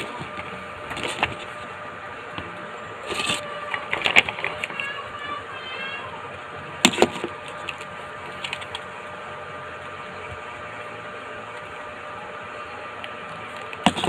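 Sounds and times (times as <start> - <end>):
faint hum: 0.0 - 14.0.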